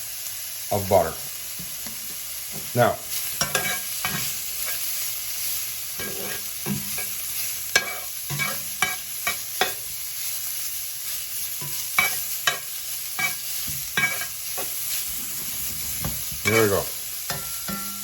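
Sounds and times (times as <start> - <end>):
meat sizzling in a frying pan: 0.0 - 18.0
utensil scraping a pan: 2.6 - 5.0, 6.0 - 9.9, 11.5 - 18.0.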